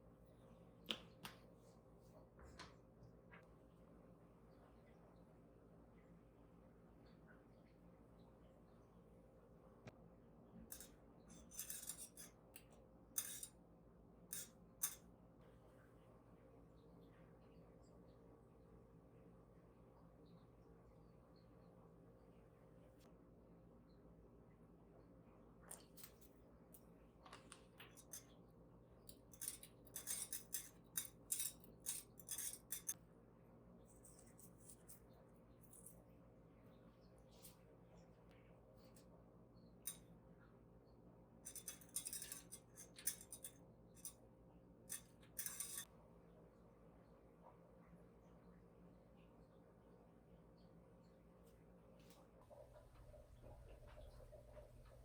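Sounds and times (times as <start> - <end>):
faint room hum: 0.0 - 55.0
kitchen utensils clattering: 29.3 - 33.0, 41.5 - 44.1, 44.9 - 45.9.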